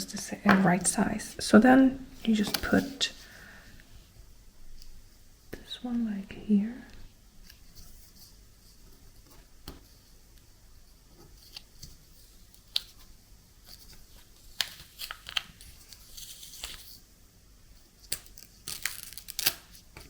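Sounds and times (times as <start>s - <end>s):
tape tearing: 18.1s - 19.8s.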